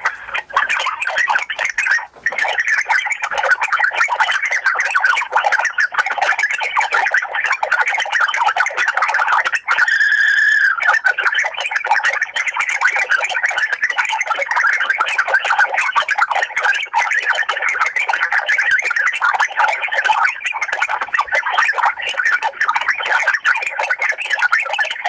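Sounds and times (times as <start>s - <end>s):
chirping and clicking over phone line: 0.0s - 25.0s.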